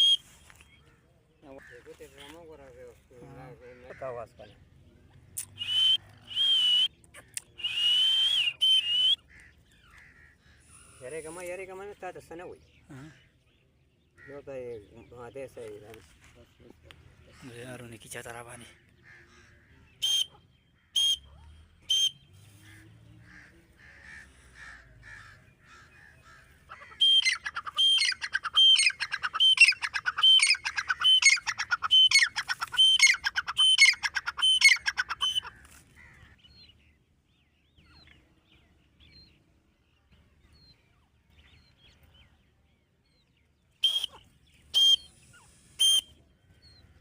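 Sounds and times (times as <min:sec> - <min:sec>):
bird shrill calls: 0:25.2 - 0:36.7, 0:43.8 - 0:46.8.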